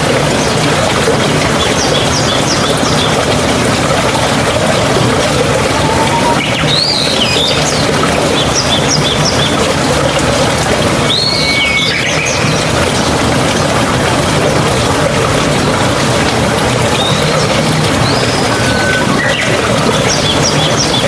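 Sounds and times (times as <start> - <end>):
rushing mountain stream: 0.0 - 21.0
birds chirping: 5.2 - 9.7, 16.9 - 21.0.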